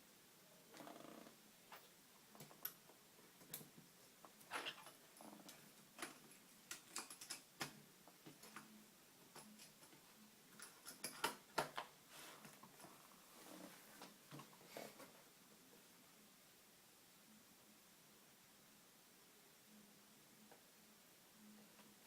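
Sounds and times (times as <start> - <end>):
faint clicks and taps: 1.7 - 12.9.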